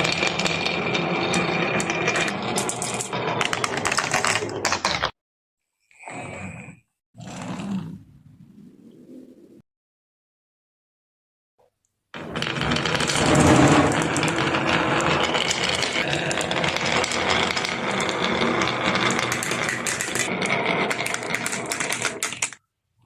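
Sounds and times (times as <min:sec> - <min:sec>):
marbles rolling and clattering: 0:00.0 - 0:05.1, 0:12.2 - 0:22.6.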